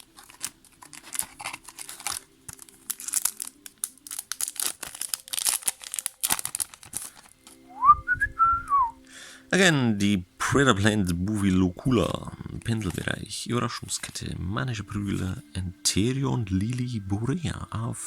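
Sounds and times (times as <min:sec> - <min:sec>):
foil wrapper tearing and crinkling: 0:00.0 - 0:07.6.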